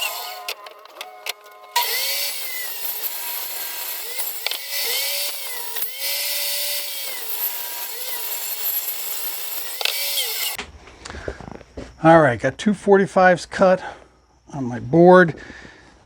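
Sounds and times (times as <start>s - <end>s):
power saw cutting wood: 0.0s - 10.6s.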